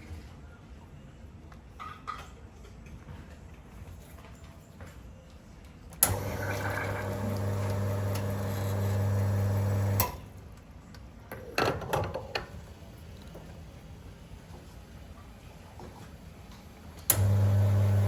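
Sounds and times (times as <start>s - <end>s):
coffee machine humming: 6.0s - 10.3s, 12.2s - 18.0s.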